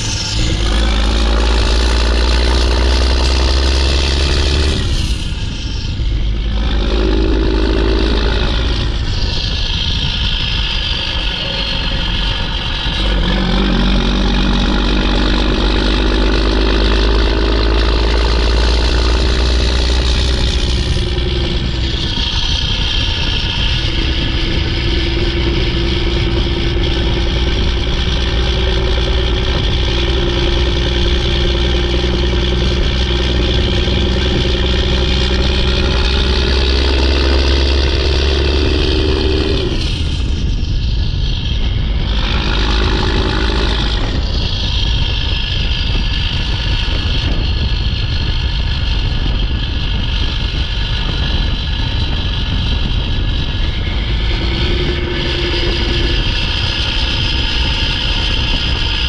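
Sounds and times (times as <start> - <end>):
diesel truck engine under load: 0.0 - 59.0.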